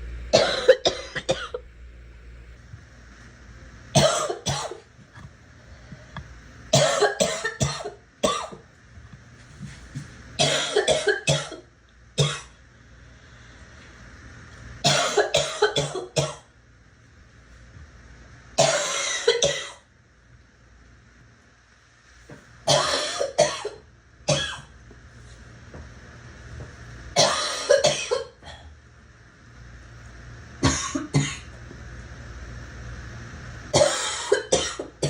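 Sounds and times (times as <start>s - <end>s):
girl coughing: 0.4s - 1.6s, 4.0s - 4.8s, 6.7s - 8.6s, 10.4s - 11.6s, 14.9s - 16.4s, 18.6s - 19.8s, 22.7s - 24.7s, 27.2s - 28.7s, 30.6s - 31.5s, 33.8s - 34.9s.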